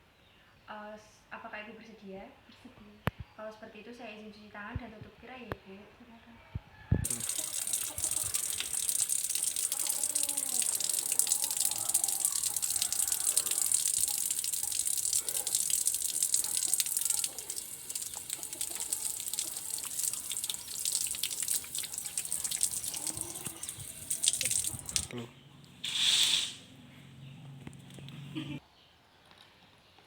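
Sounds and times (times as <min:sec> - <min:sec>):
water running from a tap: 0:07.0 - 0:25.1.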